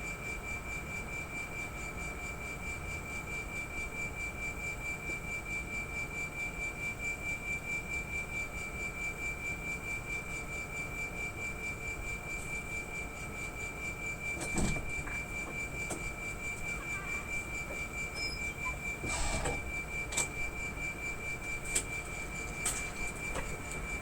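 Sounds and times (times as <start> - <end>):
air conditioner compressor whining: 0.0 - 24.0.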